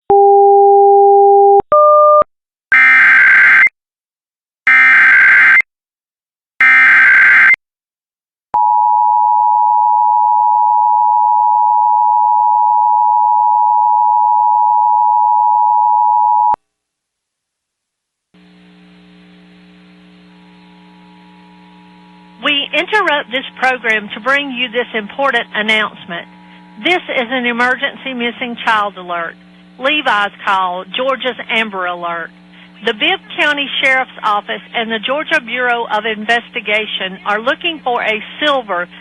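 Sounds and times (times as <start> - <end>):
steady attention tone: 18.4 - 36.4
faint hum: 18.4 - 39.0.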